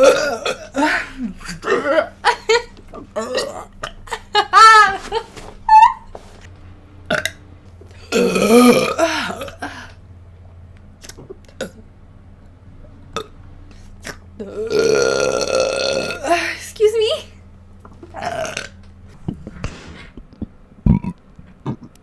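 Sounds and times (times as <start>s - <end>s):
person burping: 0.0s - 4.3s, 8.0s - 10.0s, 14.1s - 16.4s, 18.0s - 18.8s, 20.9s - 22.0s.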